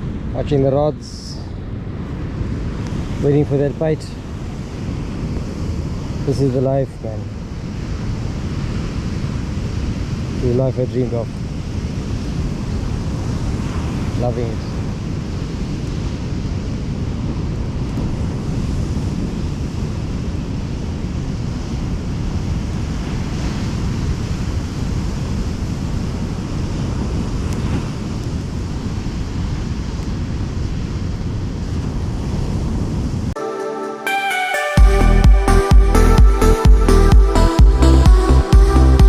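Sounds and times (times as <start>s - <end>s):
wind buffeting microphone: 0.0s - 33.3s
ocean surf: 0.0s - 39.0s
music: 33.4s - 39.0s.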